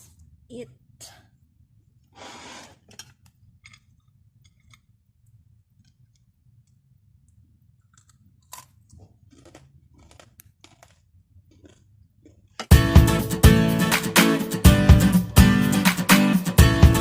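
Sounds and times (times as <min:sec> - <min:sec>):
crunchy chewing: 0:03.6 - 0:12.7.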